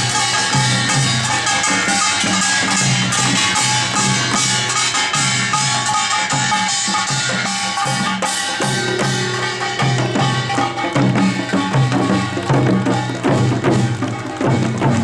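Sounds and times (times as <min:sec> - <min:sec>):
drums beating dense rhythm: 0:00.0 - 0:15.0
ringing metal tones: 0:00.0 - 0:15.0.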